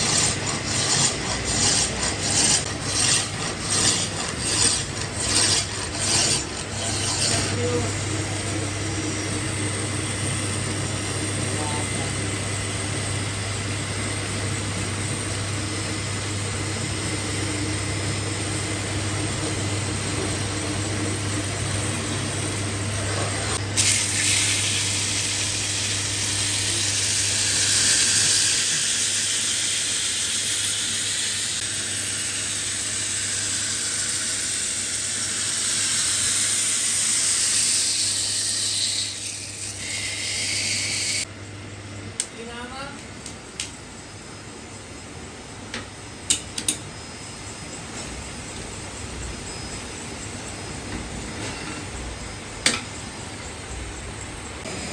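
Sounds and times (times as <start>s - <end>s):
lathe humming: 0.0s - 41.3s, 54.6s - 54.9s.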